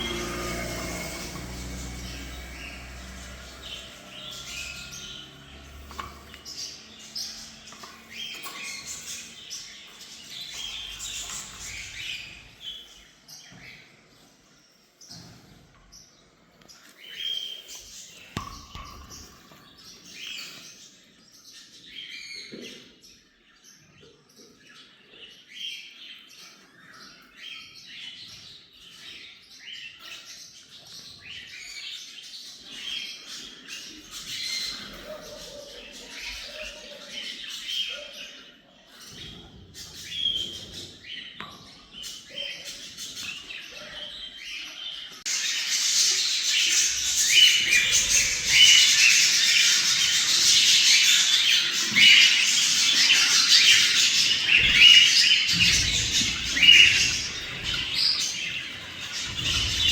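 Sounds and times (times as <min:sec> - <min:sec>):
small parrots chirping: 0:45.3 - 0:59.9.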